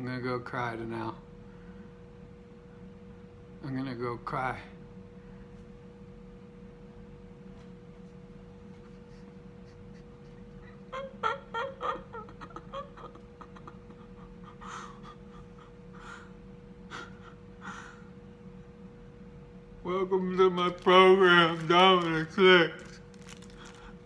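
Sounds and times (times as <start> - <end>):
faint steady hum: 0.0 - 24.0
man fake crying with sobs: 10.6 - 16.3.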